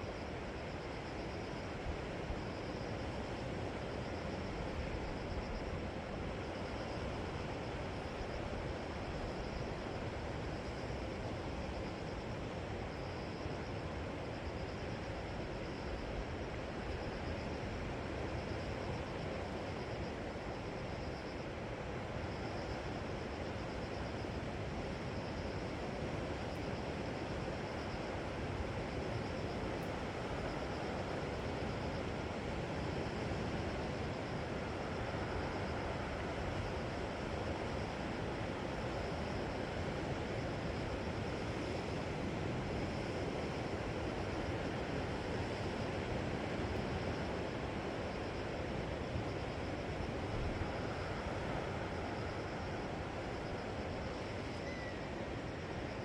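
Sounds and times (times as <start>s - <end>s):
faint high-pitched pulsing trill: 0.0s - 56.0s
sea surf on shore: 24.0s - 56.0s.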